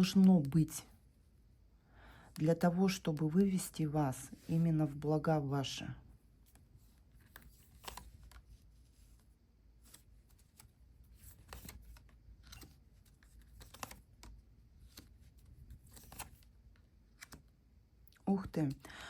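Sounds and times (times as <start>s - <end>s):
cards being handled: 6.5s - 17.6s.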